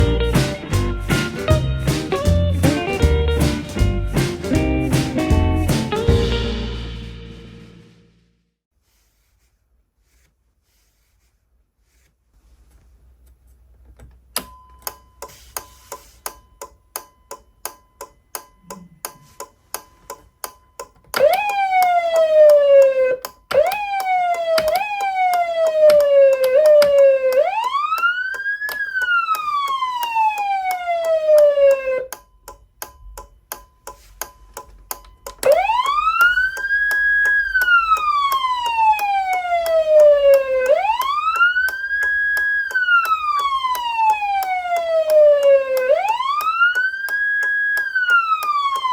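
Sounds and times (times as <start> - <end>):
siren sweeping and wailing: 21.2 - 32.1, 35.4 - 48.9.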